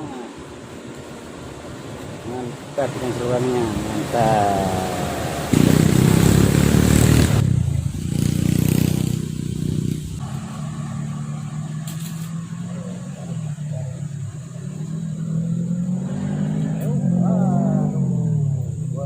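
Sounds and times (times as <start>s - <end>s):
loud rushing burst: 2.4s - 11.6s
vehicle engine running: 4.4s - 19.0s.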